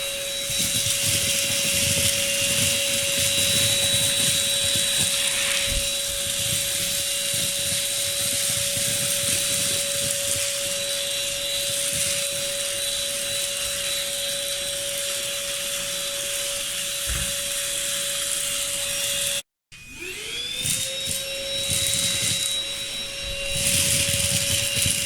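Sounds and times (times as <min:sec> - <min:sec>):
vacuum motor humming and whining: 0:00.0 - 0:25.0.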